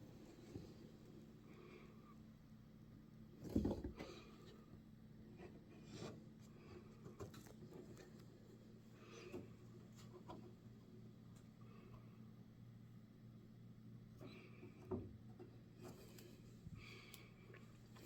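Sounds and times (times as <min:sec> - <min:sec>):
low steady hum: 0:00.0 - 0:18.0.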